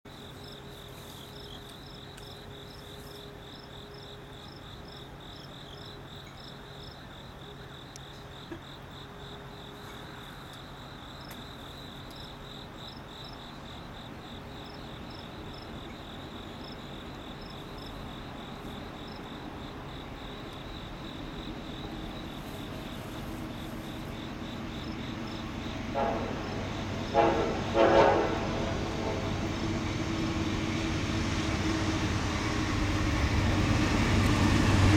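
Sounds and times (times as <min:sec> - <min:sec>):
chirping insects: 0:00.1 - 0:33.5
train rumble: 0:00.1 - 0:34.9
locomotive air horn blasts: 0:25.8 - 0:29.6.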